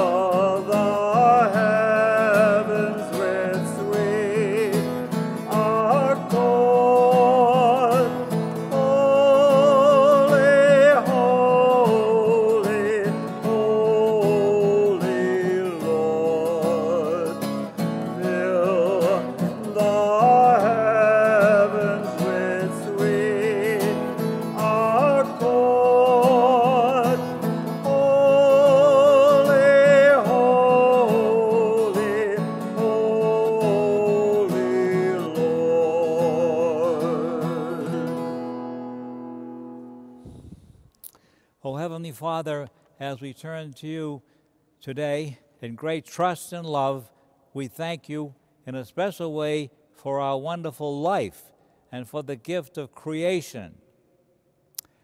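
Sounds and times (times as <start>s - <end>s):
person singing a hymn with vibrato: 0.0s - 38.6s
guitar: 0.0s - 43.4s, 53.5s - 55.0s.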